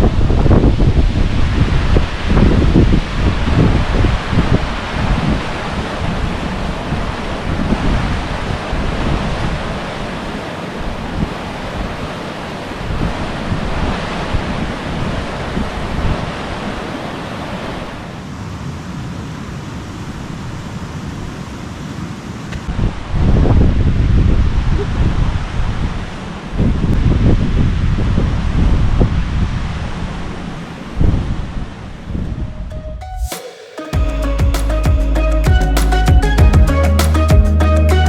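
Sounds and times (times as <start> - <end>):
wind buffeting the microphone: 0.0 - 32.7.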